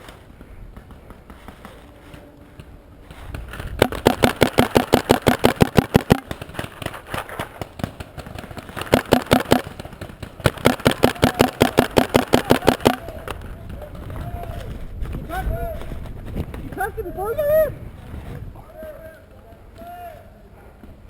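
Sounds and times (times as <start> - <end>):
paintball marker firing bursts: 3.5 - 13.4.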